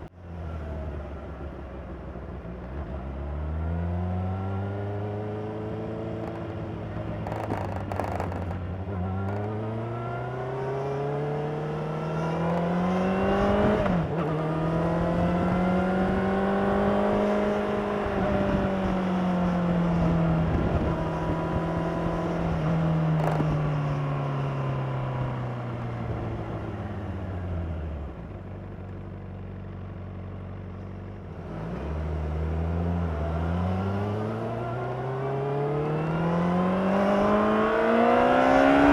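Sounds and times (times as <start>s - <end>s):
motorcycle engine revving: 4.0s - 26.7s, 31.4s - 38.9s.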